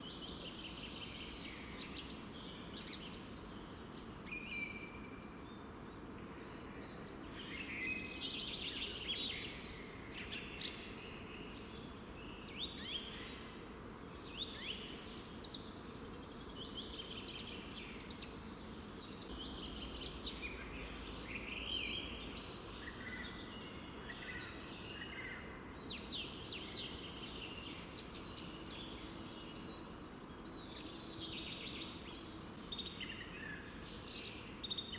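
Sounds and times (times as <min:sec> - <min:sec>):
songbirds singing and chirping: 0:00.0 - 0:34.9.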